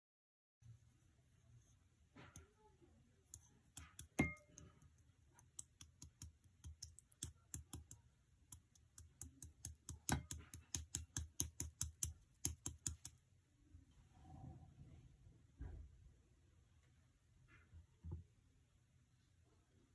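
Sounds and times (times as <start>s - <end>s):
typing on a keyboard: 8.6s - 13.1s.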